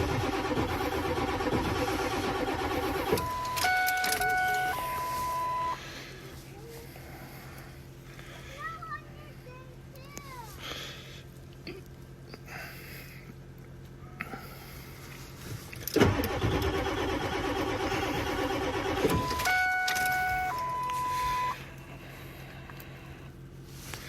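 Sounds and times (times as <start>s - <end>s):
diesel engine cranking: 0.0s - 6.3s, 14.4s - 24.0s.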